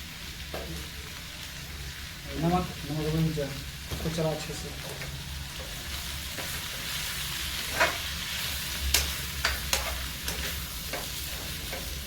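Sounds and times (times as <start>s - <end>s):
curry sizzling in a pan: 0.0s - 12.0s
utensil scraping a pan: 6.4s - 8.2s, 9.0s - 12.0s.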